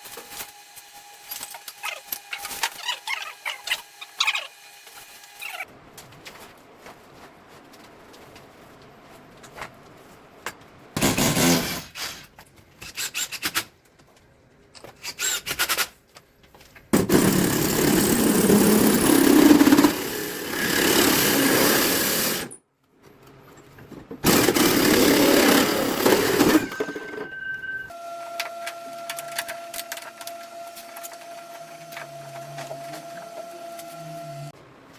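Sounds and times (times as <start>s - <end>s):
power tool running in bursts: 17.0s - 22.6s, 24.2s - 26.8s.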